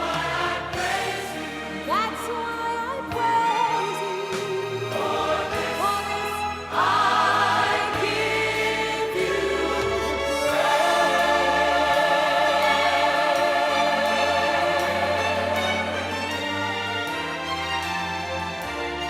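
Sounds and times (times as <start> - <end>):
choir singing gospel: 0.0 - 19.0
instrumental accompaniment: 0.0 - 19.0.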